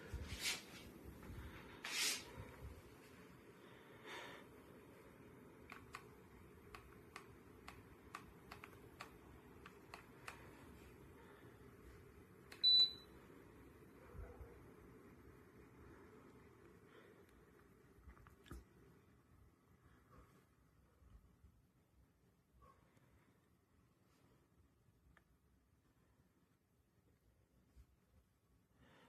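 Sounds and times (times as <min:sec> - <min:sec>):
small clicks: 0:05.6 - 0:10.6.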